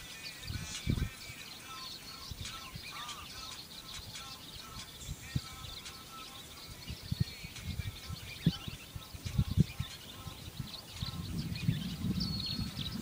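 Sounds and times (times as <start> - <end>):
night wildlife chirping: 0.0 - 13.0
dull low thumps: 9.2 - 9.8, 10.5 - 13.0.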